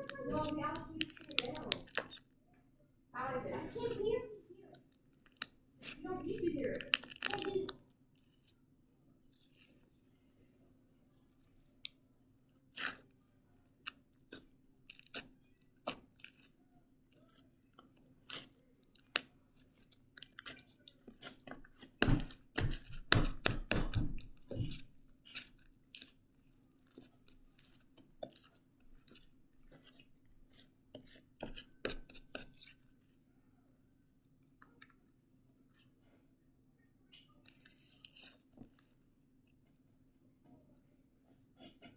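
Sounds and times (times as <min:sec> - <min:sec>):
slime squishing and popping: 0:00.0 - 0:02.3, 0:05.0 - 0:07.9.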